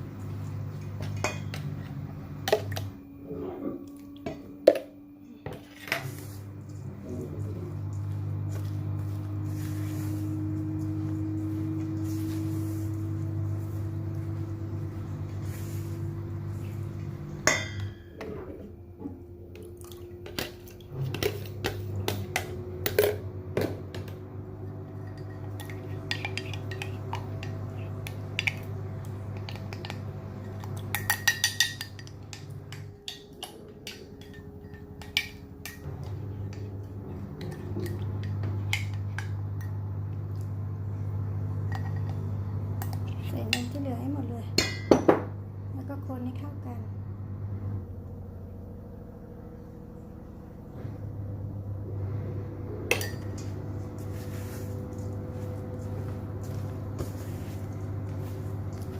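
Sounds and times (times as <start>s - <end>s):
steady low hum: 0.0s - 58.9s
utensil clinking against a bowl: 17.4s - 18.3s, 24.9s - 36.7s, 52.9s - 53.5s.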